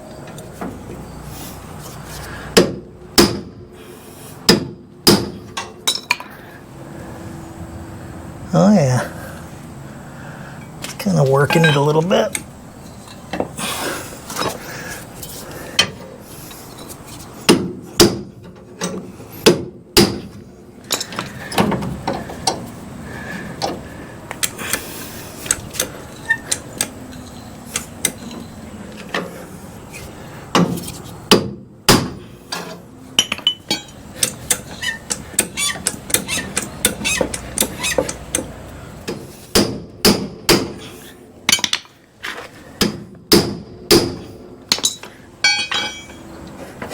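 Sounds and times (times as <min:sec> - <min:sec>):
hammer striking steel: 0:42.8 - 0:46.3.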